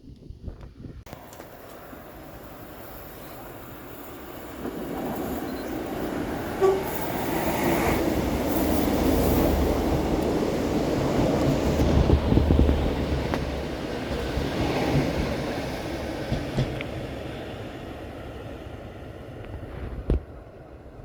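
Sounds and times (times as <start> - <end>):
diesel train approaching: 1.1 - 21.0
brief sharp tone: 6.6 - 7.1.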